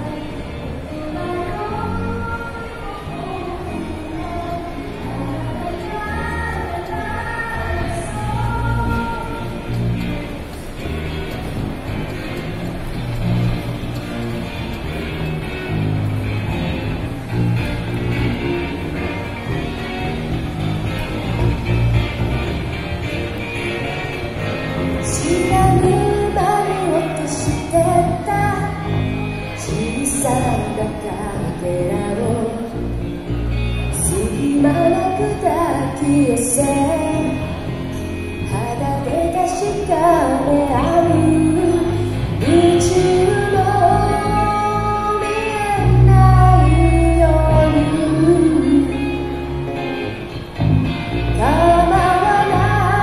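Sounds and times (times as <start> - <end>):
person singing: 0.0 - 10.2, 23.9 - 33.1, 33.9 - 49.9, 51.4 - 53.0
bass: 0.0 - 53.0
live band playing pop music: 0.0 - 53.0.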